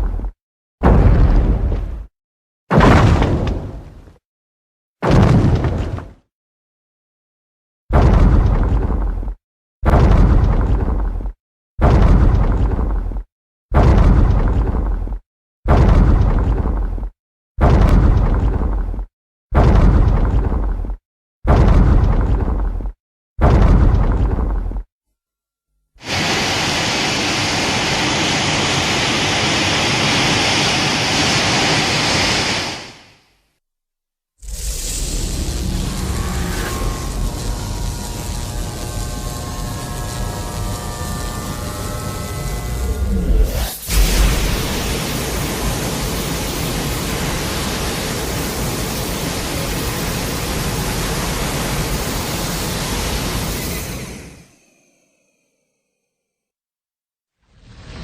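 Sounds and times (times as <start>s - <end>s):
rushing hiss: 26.0s - 33.1s.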